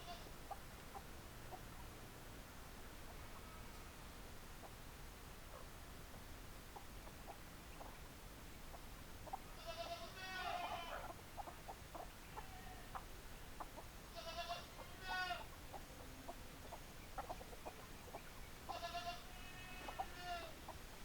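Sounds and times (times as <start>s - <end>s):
chickens calling: 8.7s - 21.0s.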